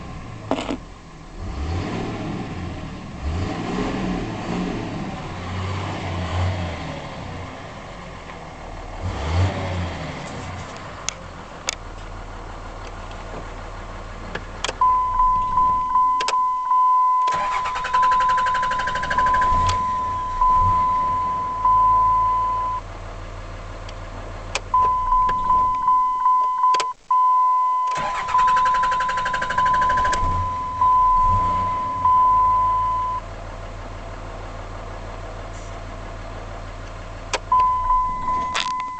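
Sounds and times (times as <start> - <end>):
diesel engine idling unevenly: 10.8 - 26.3, 28.0 - 38.8
dashboard warning chime: 14.8 - 22.8, 24.8 - 33.2, 37.5 - 38.9
starter motor cranking: 17.3 - 19.8, 27.9 - 30.4.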